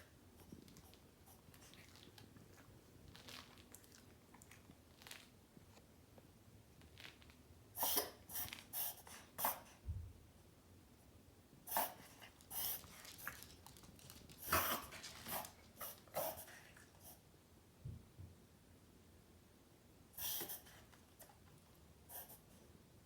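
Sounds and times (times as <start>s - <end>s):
dog reverse sneezing: 7.8s - 9.7s, 20.2s - 20.8s.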